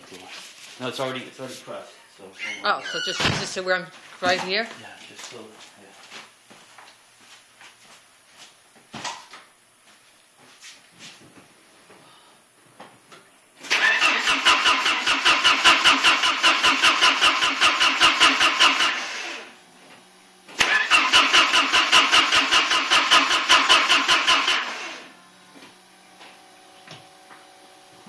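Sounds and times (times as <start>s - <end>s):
engine cranking on starter: 13.6s - 19.5s, 20.6s - 25.1s.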